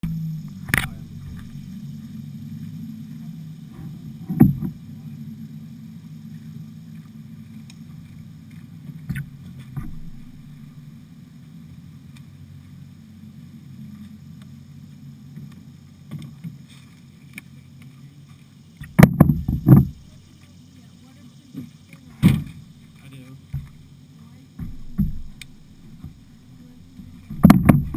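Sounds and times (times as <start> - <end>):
paddle thuds on hull: 3.8 - 4.9, 9.1 - 10.6, 18.8 - 20.1, 22.2 - 22.7, 24.6 - 27.9.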